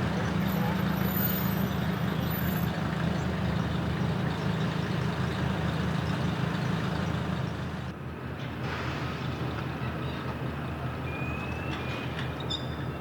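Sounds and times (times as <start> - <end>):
diesel engine droning: 0.0 - 8.0.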